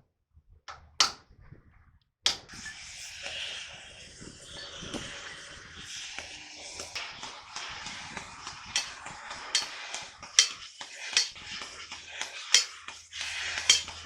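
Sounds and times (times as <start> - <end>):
hammer striking metal: 2.3 - 2.5, 8.8 - 9.8, 10.4 - 11.4, 12.5 - 12.8, 13.5 - 14.0.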